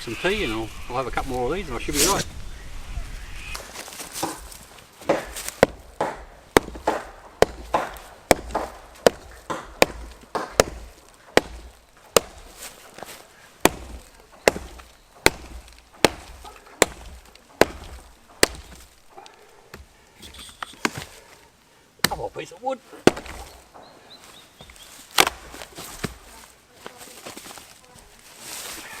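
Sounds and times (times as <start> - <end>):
axe chopping firewood: 3.8 - 21.2, 22.0 - 22.4, 23.0 - 23.7, 24.6 - 26.3.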